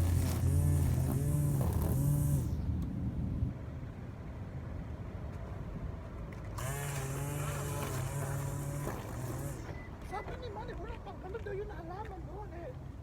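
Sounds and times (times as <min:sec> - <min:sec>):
engine running steadily: 0:00.0 - 0:02.8, 0:06.6 - 0:10.0.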